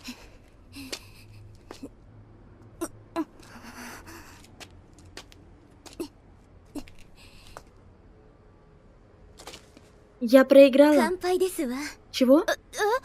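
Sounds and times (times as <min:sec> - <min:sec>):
person gasping breaths: 0:03.4 - 0:04.5.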